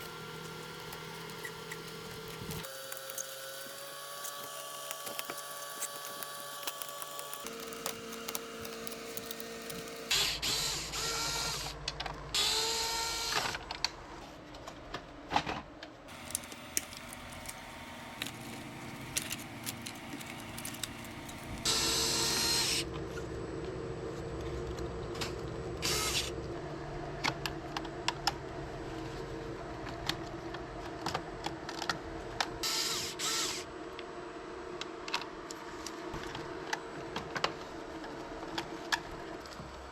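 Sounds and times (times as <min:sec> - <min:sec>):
electric screwdriver whining: 0:00.0 - 0:11.8, 0:12.4 - 0:13.6, 0:16.1 - 0:22.9, 0:25.8 - 0:26.4, 0:32.6 - 0:33.7.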